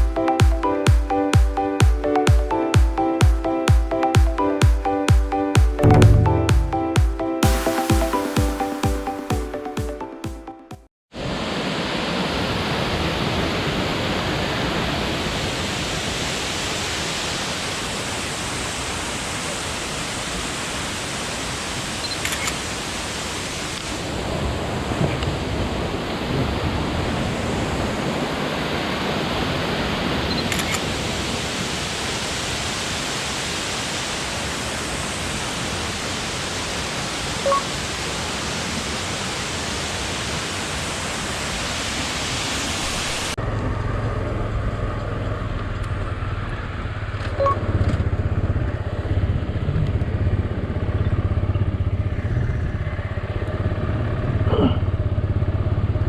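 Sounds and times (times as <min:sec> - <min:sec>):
rushing water: 0:05.8 - 0:09.9, 0:11.2 - 0:43.4
motorcycle engine droning: 0:43.4 - 0:56.0.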